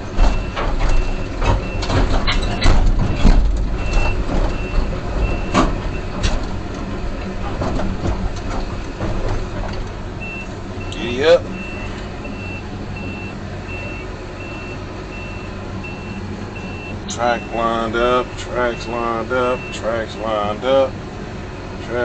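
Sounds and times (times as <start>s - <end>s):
heavy metal clanks and knocks: 0.0s - 12.4s
excavator diesel engine rumbling: 0.0s - 22.0s
backup alarm beeping: 0.2s - 6.2s, 10.2s - 19.9s.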